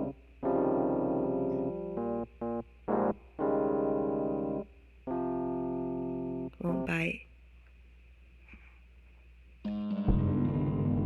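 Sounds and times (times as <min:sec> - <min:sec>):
electric keyboard chords: 0:00.0 - 0:06.5, 0:09.7 - 0:11.0.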